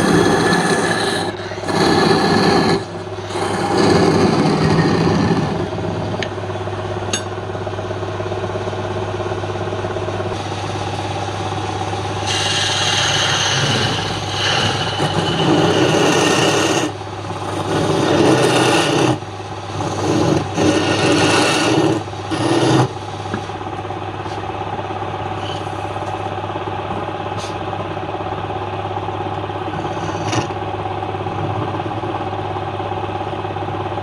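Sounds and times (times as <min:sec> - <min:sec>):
wood lathe humming: 0:00.0 - 0:06.3, 0:10.3 - 0:24.4, 0:29.2 - 0:32.2
tool scraping spinning wood: 0:00.0 - 0:06.4, 0:10.3 - 0:24.5, 0:25.3 - 0:26.3, 0:29.4 - 0:32.3.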